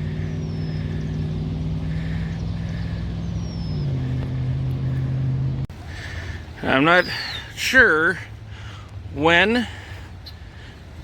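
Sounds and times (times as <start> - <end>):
vehicle engine humming: 0.0 - 11.0
small bird chirping: 2.1 - 4.3.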